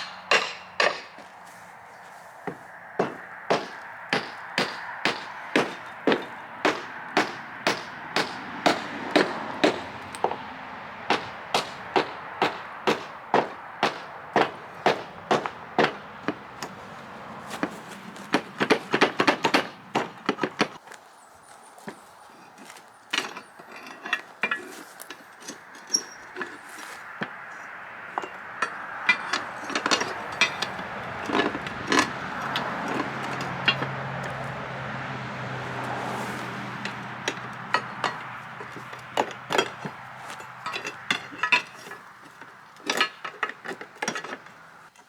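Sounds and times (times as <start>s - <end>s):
hammer blows on timber and metal: 0.0s - 1.4s, 2.5s - 20.8s
light knocks and clinks: 21.9s - 34.6s, 36.7s - 45.0s.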